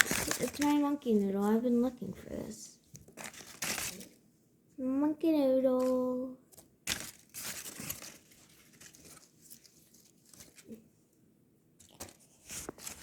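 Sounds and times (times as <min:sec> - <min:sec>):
sharp packaging crackles: 0:00.0 - 0:01.3, 0:03.0 - 0:04.2, 0:06.5 - 0:10.8
packaging rustling and crinkling: 0:00.0 - 0:02.2, 0:02.8 - 0:04.2, 0:06.5 - 0:10.8, 0:11.8 - 0:13.0.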